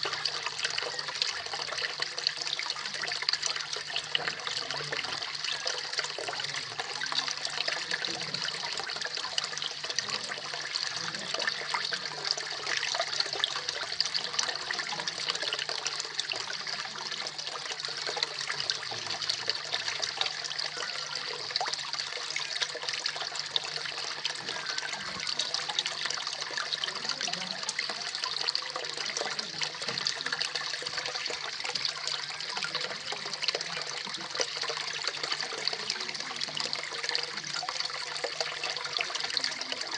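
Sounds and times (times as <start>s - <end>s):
waterfall splashing into a pond: 0.0s - 39.9s.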